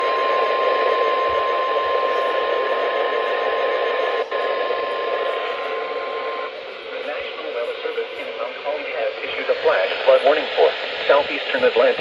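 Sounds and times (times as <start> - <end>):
steady alarm tone: 0.0 - 6.9
radio static hiss: 0.7 - 12.0.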